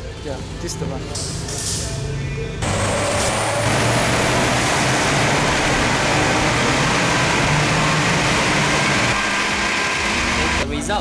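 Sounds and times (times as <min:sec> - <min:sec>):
engine running hard on dynamometer: 0:02.6 - 0:10.7.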